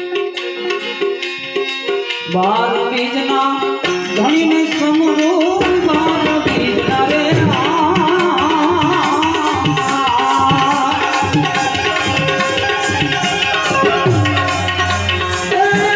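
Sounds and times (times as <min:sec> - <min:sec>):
harmonium melody: 0:00.0 - 0:15.9
tabla strokes: 0:03.8 - 0:15.9.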